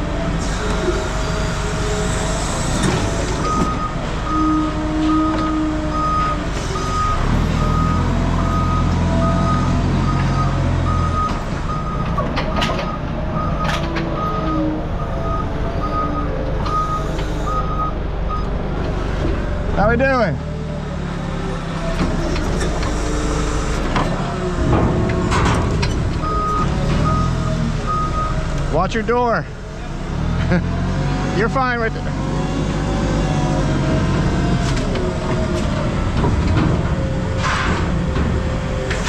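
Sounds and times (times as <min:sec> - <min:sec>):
reverse alarm beeping: 0:03.4 - 0:12.1, 0:12.9 - 0:18.5, 0:26.2 - 0:28.4.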